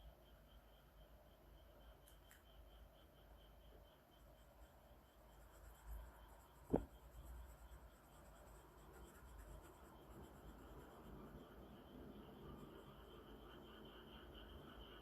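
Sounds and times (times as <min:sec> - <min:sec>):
drawing tool scratching paper: 0:06.6 - 0:11.4
sharp tap: 0:06.7 - 0:06.9.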